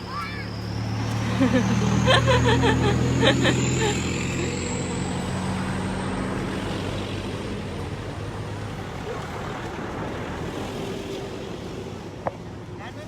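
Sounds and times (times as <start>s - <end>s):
vehicle engine running: 0.0s - 10.3s
road or wind noise: 0.0s - 13.0s.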